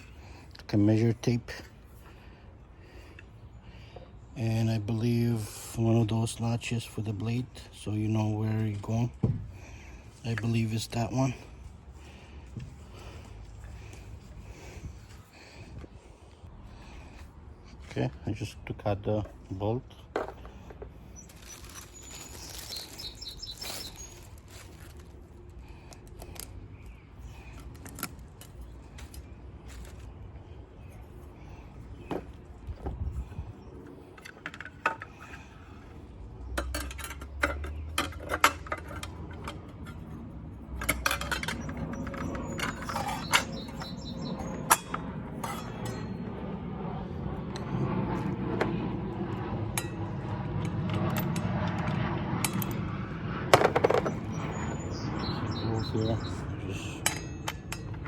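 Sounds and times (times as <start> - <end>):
metallic clinks of saw parts: 36.6 - 40.1, 40.8 - 46.2, 57.0 - 58.0.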